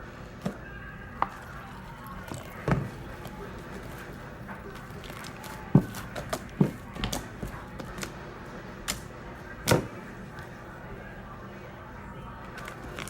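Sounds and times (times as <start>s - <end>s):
slime squelching: 0.4s - 8.2s, 12.5s - 13.0s.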